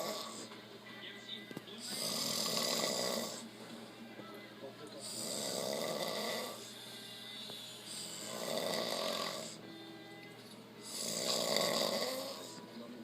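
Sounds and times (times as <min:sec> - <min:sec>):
man snoring: 0:00.0 - 0:00.5, 0:01.9 - 0:03.5, 0:05.0 - 0:06.8, 0:07.4 - 0:09.6, 0:10.8 - 0:12.6.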